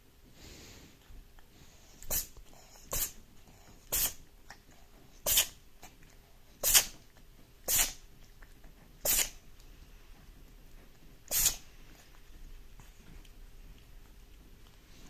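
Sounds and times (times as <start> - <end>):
cat sneezing: 2.0 - 3.2, 3.9 - 4.2, 5.2 - 5.6, 6.6 - 7.0, 7.6 - 8.1, 9.0 - 9.4, 11.3 - 11.7.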